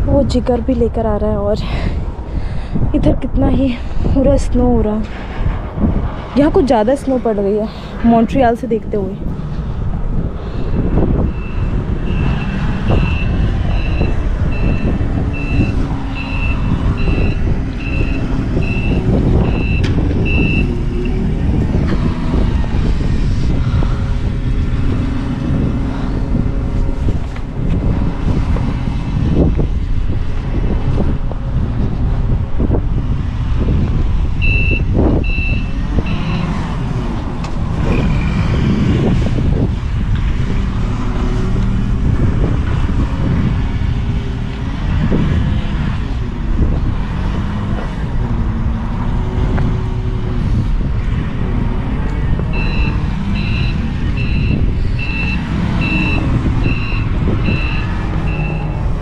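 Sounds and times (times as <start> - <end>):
heavy vehicle engine rumbling: 0.0 - 59.0
reverse alarm beeping: 11.3 - 21.2, 34.4 - 36.5, 52.5 - 58.8.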